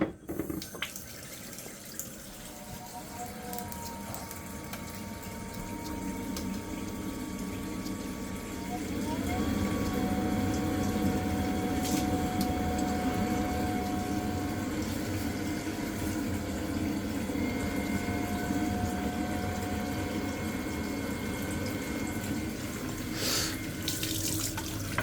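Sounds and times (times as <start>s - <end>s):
boiler fan and pump whine: 0.0s - 25.0s
water rushing through pipes: 0.3s - 25.0s
higher boiler tone: 2.2s - 23.9s.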